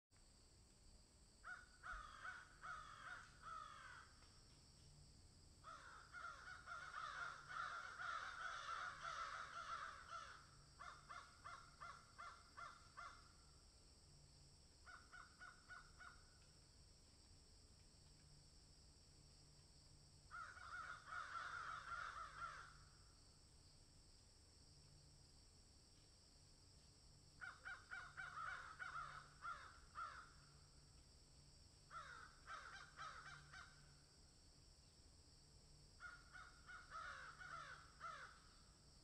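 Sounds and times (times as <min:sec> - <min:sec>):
crows cawing: 0:01.4 - 0:04.2, 0:05.6 - 0:13.3, 0:14.8 - 0:16.3, 0:20.3 - 0:22.9, 0:27.4 - 0:30.5, 0:31.9 - 0:33.8, 0:36.0 - 0:38.5.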